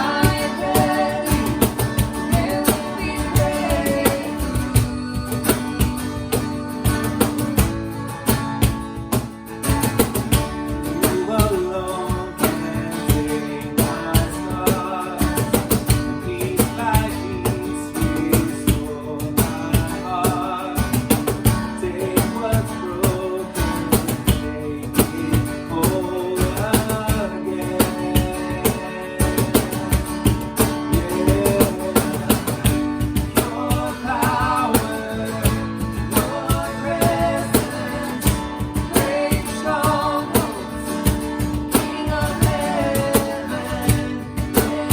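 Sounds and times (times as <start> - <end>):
steady beat: 0.0 - 17.2, 27.9 - 44.9
strummed acoustic guitar: 0.0 - 44.9.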